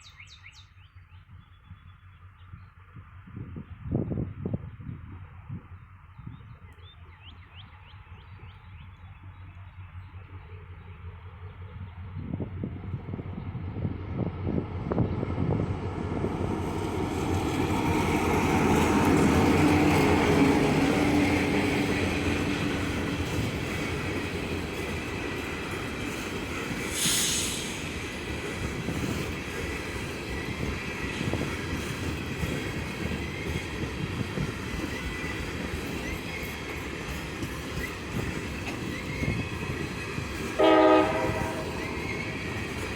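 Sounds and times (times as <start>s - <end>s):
diesel locomotive engine: 0.0s - 42.9s
train wheels clattering and squealing: 16.6s - 40.6s, 41.4s - 42.9s
burst of hiss: 26.9s - 28.0s.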